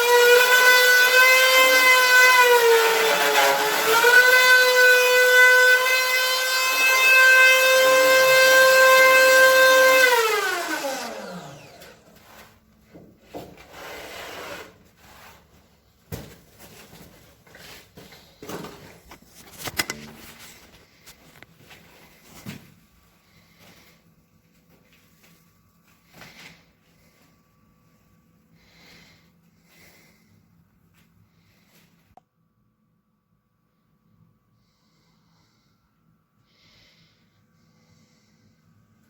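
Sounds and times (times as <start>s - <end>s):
power tool motor whining: 0.0s - 12.2s.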